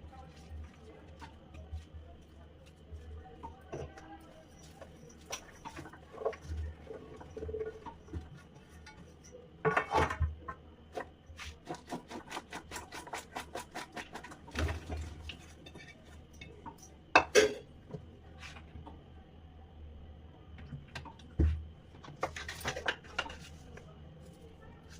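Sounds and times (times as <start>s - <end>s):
dishes clinking and scraping: 3.5s - 11.1s, 14.1s - 17.7s, 22.0s - 23.8s.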